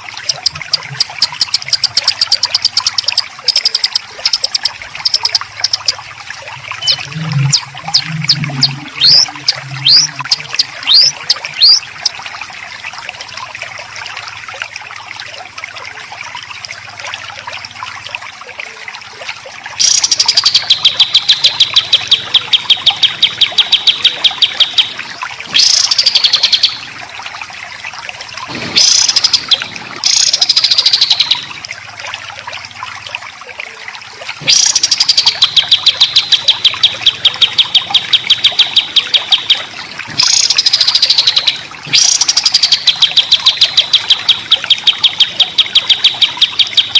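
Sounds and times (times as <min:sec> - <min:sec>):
faint background bird chirps: 0:06.7 - 0:12.2, 0:19.8 - 0:26.9, 0:28.8 - 0:31.6, 0:34.5 - 0:46.9
songbird harsh rattling song: 0:06.7 - 0:12.2, 0:19.8 - 0:25.0, 0:25.6 - 0:26.9, 0:28.6 - 0:31.5, 0:34.5 - 0:46.9.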